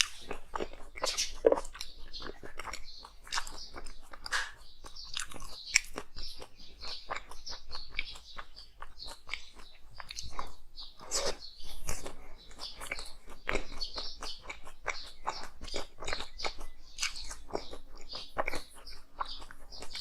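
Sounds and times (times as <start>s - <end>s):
ice crunching while chewed: 0.0s - 20.0s.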